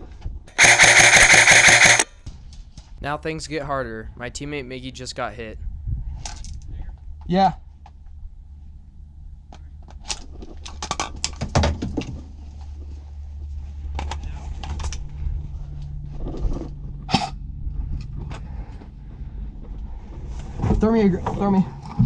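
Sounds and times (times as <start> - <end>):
sharp clicks and cracks: 0.5 - 2.1.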